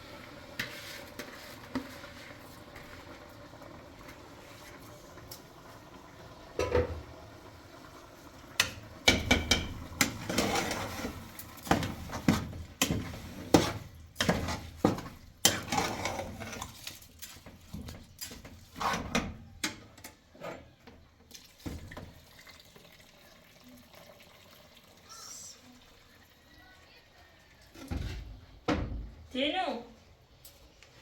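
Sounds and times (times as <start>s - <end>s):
pots and dishes clattering: 6.6s - 7.2s, 8.6s - 16.8s.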